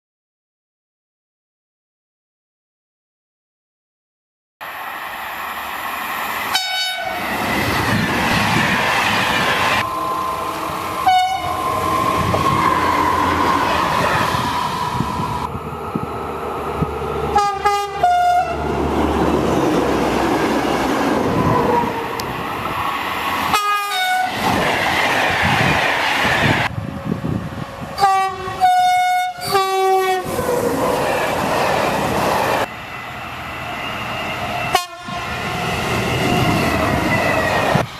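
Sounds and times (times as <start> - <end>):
train wheels on rail: 4.6 - 37.9
train horn blasts: 6.5 - 7.2, 9.8 - 12.5, 17.3 - 18.6, 23.5 - 24.3, 28.0 - 30.3, 34.7 - 35.4.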